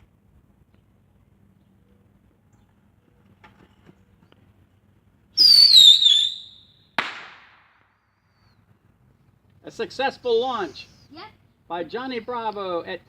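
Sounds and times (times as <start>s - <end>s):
bottle rocket whistle: 5.4s - 7.0s
firework bang: 7.0s - 7.9s.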